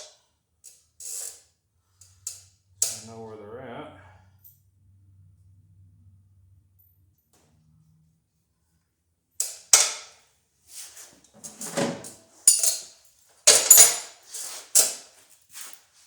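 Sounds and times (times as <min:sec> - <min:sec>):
metal tools clanking: 0:11.4 - 0:14.2.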